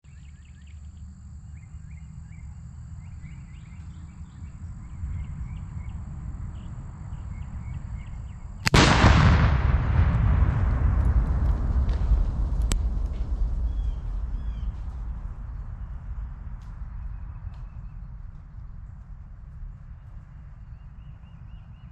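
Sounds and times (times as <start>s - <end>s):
faint bird chirping: 0.0s - 8.6s, 13.4s - 21.9s
low wind rumble: 0.0s - 21.9s
explosive blast: 8.6s - 17.0s.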